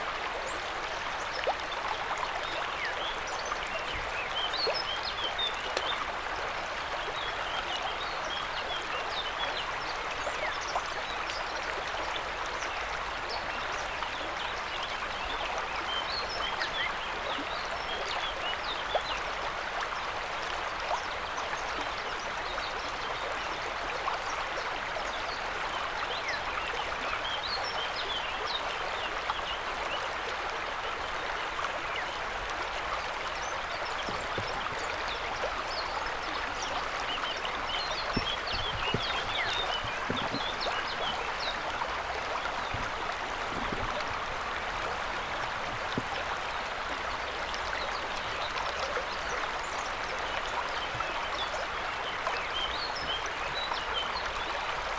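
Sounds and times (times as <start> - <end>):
river water rushing: 30.6 - 52.8.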